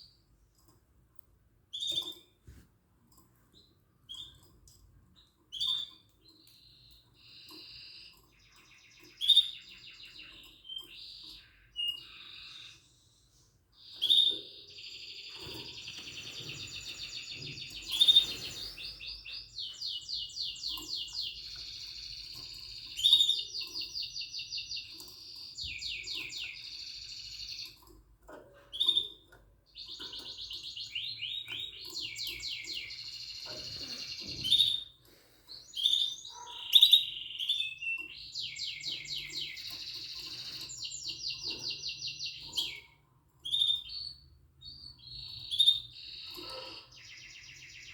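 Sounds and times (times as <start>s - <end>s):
canary singing trills: 1.6s - 2.5s, 3.3s - 47.9s
sharp bird chirps: 13.8s - 27.8s, 35.6s - 47.9s.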